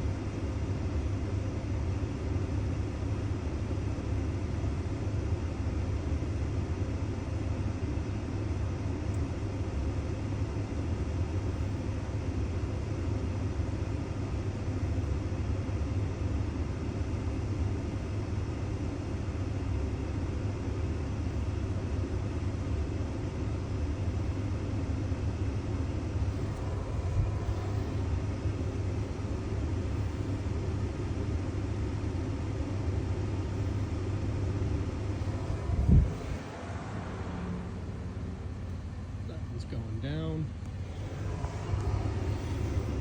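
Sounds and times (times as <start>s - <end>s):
vehicle engine rumbling: 20.6s - 43.0s.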